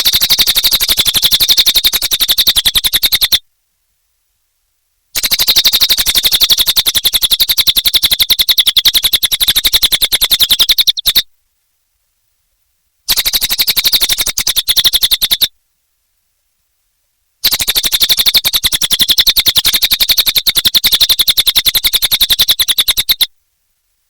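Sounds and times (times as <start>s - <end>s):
songbird rattling trill: 0.0s - 3.4s, 5.2s - 11.3s, 13.1s - 15.5s, 17.4s - 23.3s.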